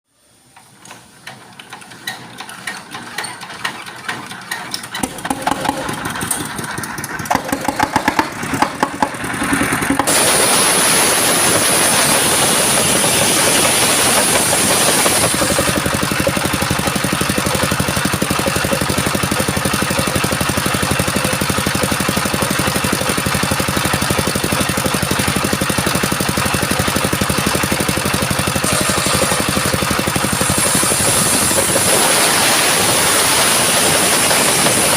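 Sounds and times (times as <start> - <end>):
sawmill engine chugging: 1.0 - 34.9
saw high hiss: 10.0 - 15.8, 28.5 - 34.9.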